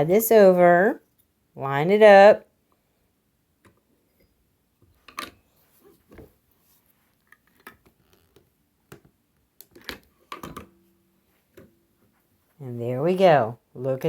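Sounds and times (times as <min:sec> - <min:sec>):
metal clicks and knocks: 0:08.9 - 0:10.8.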